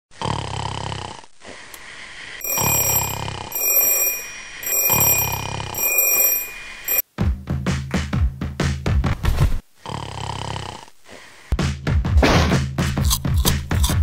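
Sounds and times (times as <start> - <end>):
person snoring: 0.1 - 3.6, 9.8 - 11.4
high thin steady tone: 2.4 - 7.0.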